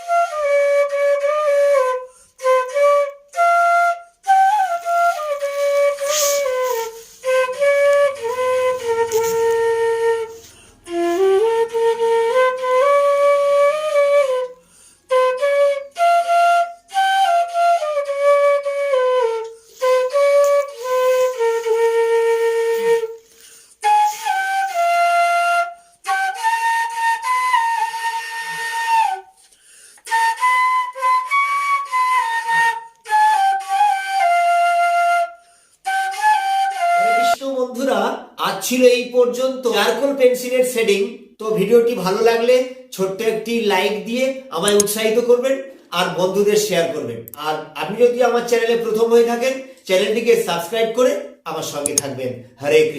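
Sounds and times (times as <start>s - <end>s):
solo flute melody: 0.0s - 37.4s.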